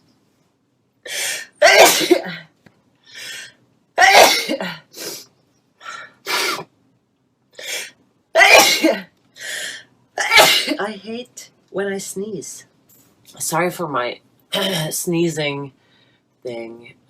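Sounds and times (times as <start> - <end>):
woman sneezing: 1.1 - 2.5, 7.6 - 9.1.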